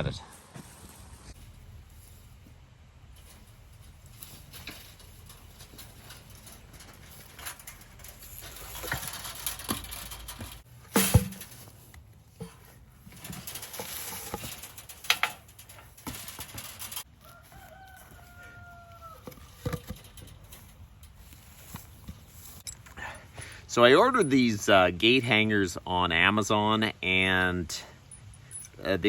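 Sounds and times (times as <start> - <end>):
knocks and clatter of work: 3.1 - 17.1, 19.2 - 23.5.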